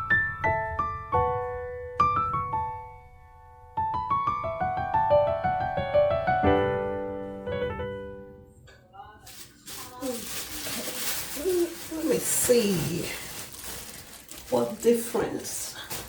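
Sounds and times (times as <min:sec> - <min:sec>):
piano notes: 0:00.0 - 0:12.0.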